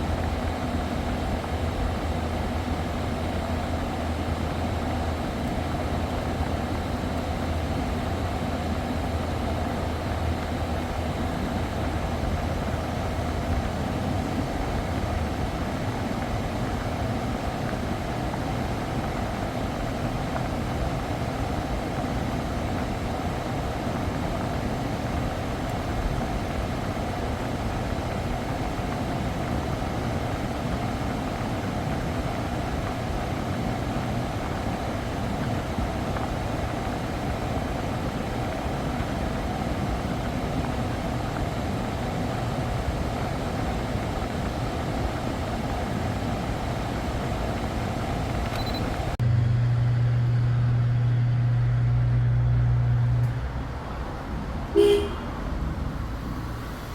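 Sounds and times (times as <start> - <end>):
low hum: 48.4 - 56.9.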